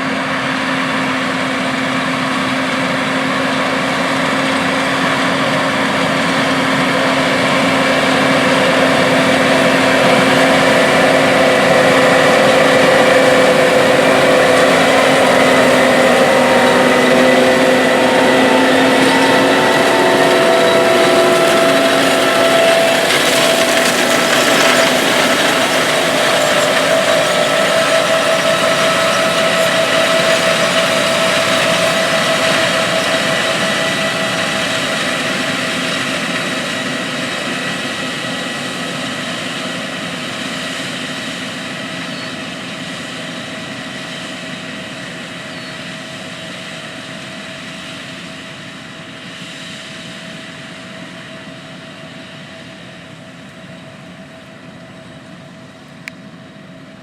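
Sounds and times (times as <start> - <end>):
diesel farm machine running: 0.0 - 57.0
rushing noise: 2.8 - 43.4.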